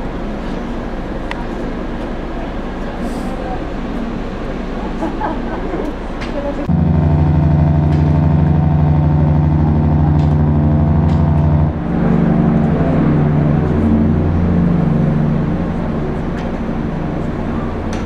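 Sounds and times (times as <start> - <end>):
ship's horn blast: 6.7 - 18.0.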